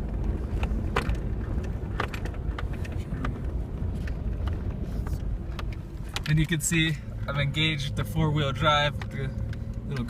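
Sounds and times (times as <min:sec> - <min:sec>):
engine and drivetrain rumble: 0:00.0 - 0:10.0
clicks and rattles: 0:00.2 - 0:06.6.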